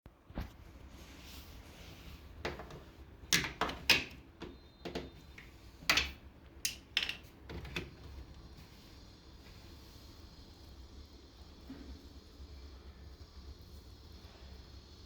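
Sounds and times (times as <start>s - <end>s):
hard parts knocking and clattering: 2.5s - 7.9s.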